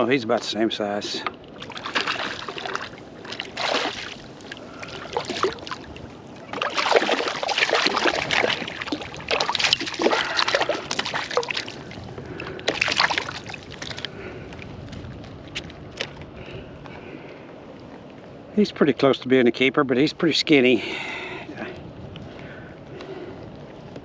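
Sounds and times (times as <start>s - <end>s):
water splashing beside kayak: 1.0s - 18.5s.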